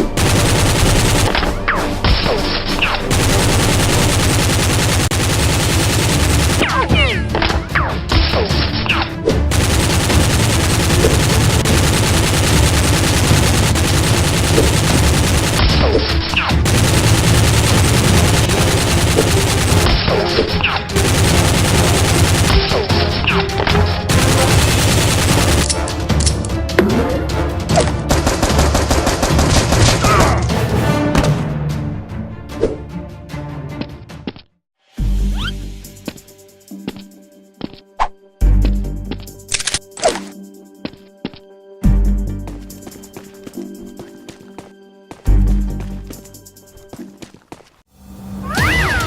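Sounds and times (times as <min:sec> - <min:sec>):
rapid automatic gunfire: 0:00.0 - 0:01.6, 0:02.9 - 0:06.9, 0:09.5 - 0:15.9, 0:16.6 - 0:23.2, 0:24.1 - 0:25.8, 0:28.1 - 0:30.2.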